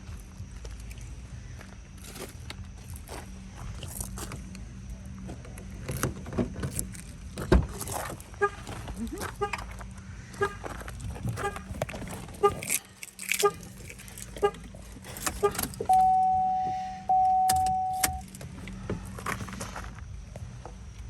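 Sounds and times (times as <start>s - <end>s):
keys jangling: 11.5s - 16.1s
car warning chimes: 14.4s - 18.4s
door lock clicks: 17.4s - 18.3s.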